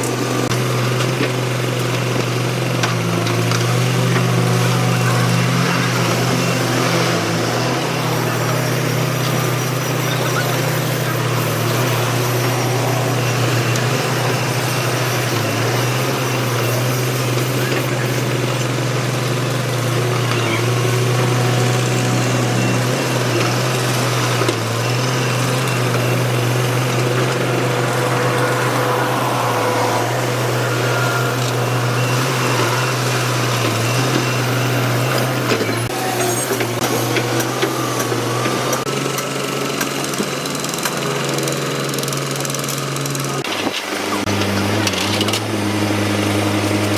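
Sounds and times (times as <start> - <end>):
excavator diesel engine running: 0.0 - 46.9.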